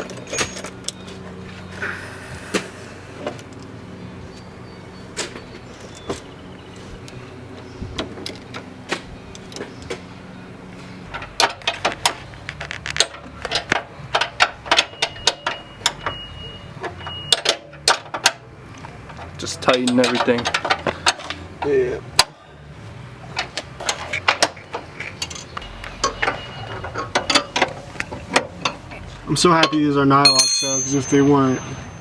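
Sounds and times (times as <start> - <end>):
hand tools clicking and clinking: 16.8 - 22.3, 23.3 - 32.0.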